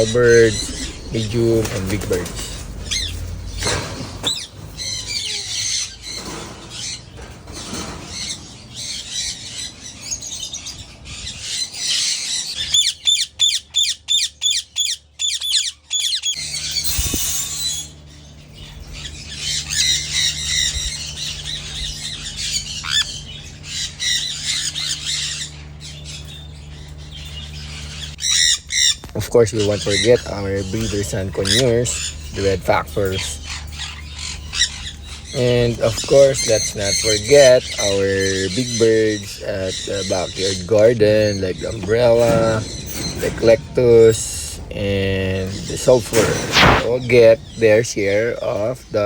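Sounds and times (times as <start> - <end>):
parrots squawking and chattering: 0.0 - 49.0
loud parrot screeches: 7.7 - 18.0.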